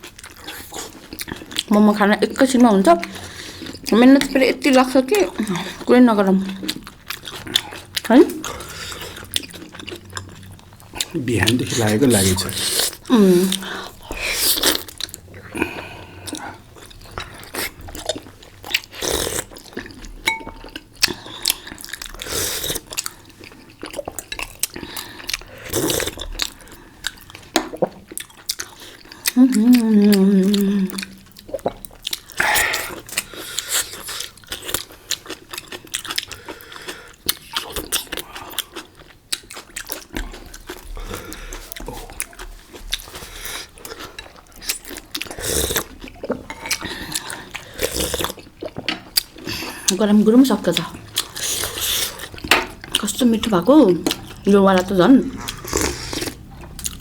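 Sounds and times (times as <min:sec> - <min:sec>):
cutlery clinking on plates: 0:20.3 - 0:20.6
person humming: 0:29.4 - 0:31.2
crunchy chewing and biting: 0:55.3 - 0:57.0.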